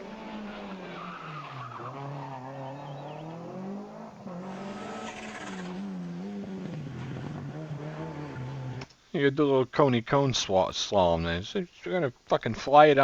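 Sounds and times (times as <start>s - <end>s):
rally car engine revving: 0.0s - 8.9s.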